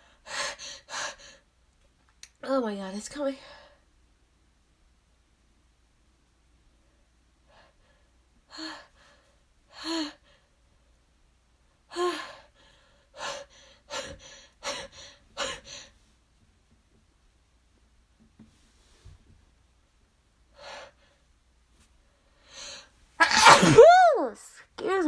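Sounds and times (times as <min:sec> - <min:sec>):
woman gasping before sneeze: 0:23.2 - 0:24.0.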